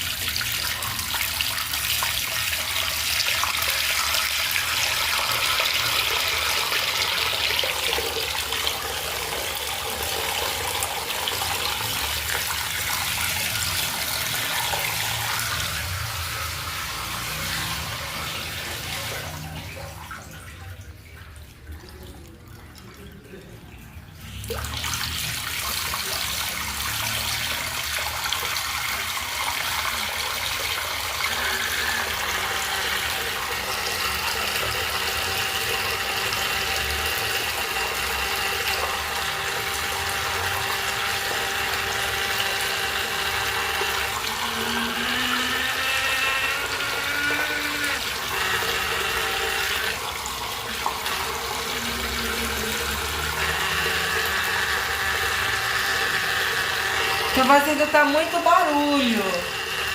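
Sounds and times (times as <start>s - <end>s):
water running from a faucet: 0.0s - 59.9s
faucet whistling tone: 51.1s - 58.0s.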